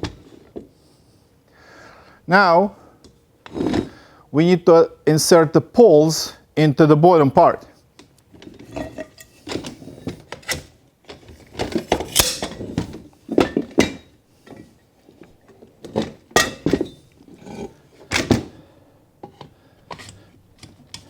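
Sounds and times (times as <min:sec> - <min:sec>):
metal poles clinking together: 0:11.9 - 0:12.8.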